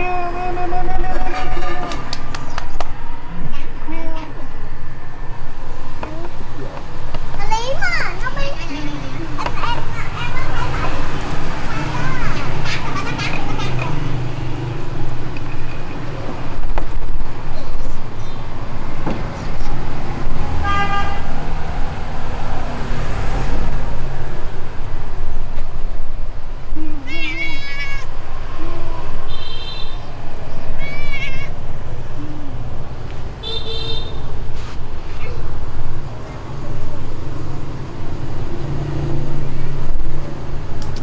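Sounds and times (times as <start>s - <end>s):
low traffic rumble: 0.0s - 41.0s
person imitating meow: 26.8s - 28.9s, 30.8s - 31.6s
cat meowing: 26.9s - 28.1s, 30.8s - 31.6s.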